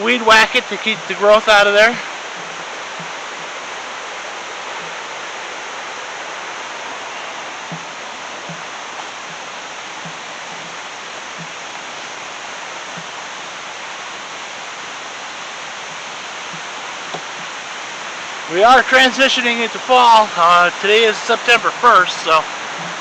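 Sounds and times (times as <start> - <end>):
river rapids rushing: 0.0 - 23.0
faint footsteps: 1.9 - 3.6, 7.2 - 11.6.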